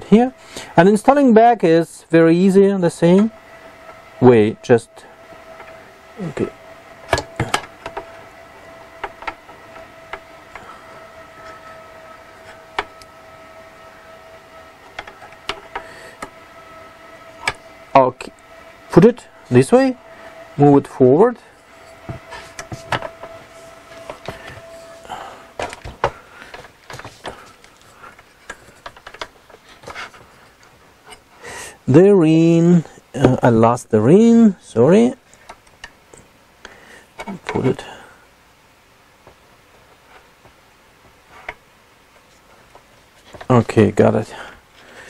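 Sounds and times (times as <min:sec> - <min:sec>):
faint steady hum: 0:00.0 - 0:45.0
metal parts clicking and tapping: 0:14.9 - 0:16.3, 0:25.6 - 0:31.2.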